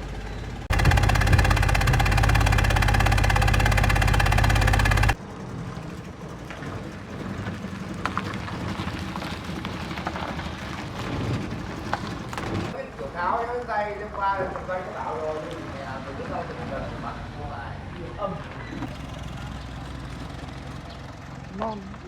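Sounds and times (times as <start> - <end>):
engine running loud: 0.0 - 5.2.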